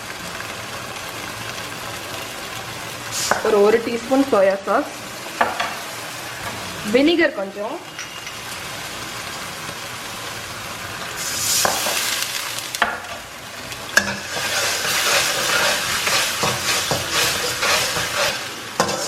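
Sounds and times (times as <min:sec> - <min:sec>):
onions sizzling in hot oil: 0:00.0 - 0:19.0
spatula tapping pan: 0:14.0 - 0:19.0.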